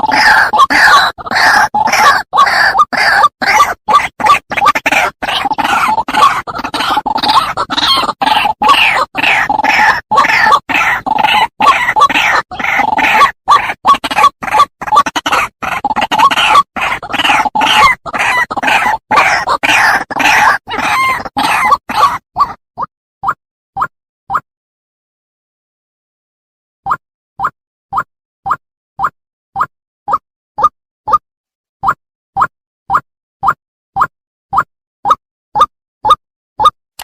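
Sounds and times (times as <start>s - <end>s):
bird calling: 0.0s - 22.6s.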